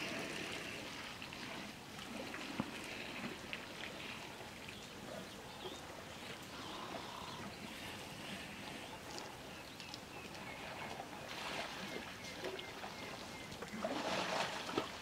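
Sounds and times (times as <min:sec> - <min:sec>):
water splashing and dripping: 0:09.1 - 0:15.0.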